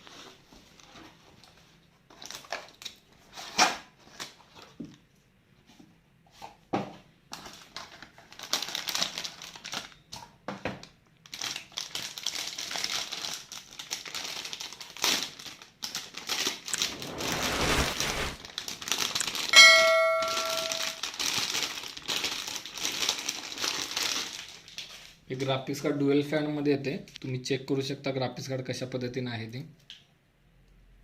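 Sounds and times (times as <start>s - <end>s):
packaging crinkling and rustling: 0.8s - 4.8s, 7.4s - 10.0s, 11.3s - 19.5s, 21.0s - 25.2s
brief ringing ding: 19.6s - 21.0s.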